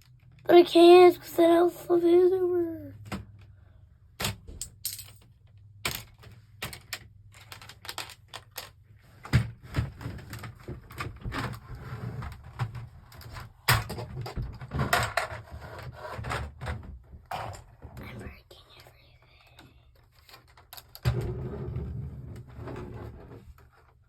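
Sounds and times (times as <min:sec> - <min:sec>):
plastic bricks clicking and rattling: 0:05.9 - 0:08.8.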